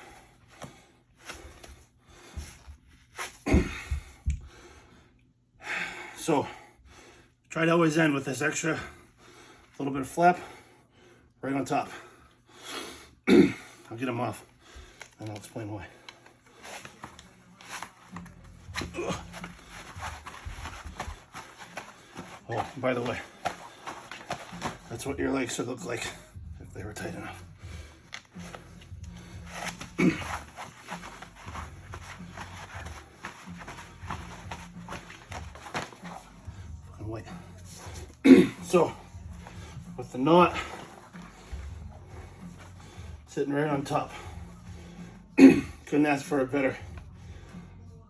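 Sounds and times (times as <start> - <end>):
elastic wraps rustling and rubbing: 0.0 - 3.6, 15.0 - 44.2
man breathing hard: 0.0 - 7.5, 8.7 - 13.9, 14.5 - 15.2, 27.3 - 38.2, 39.0 - 43.3, 47.1 - 48.0.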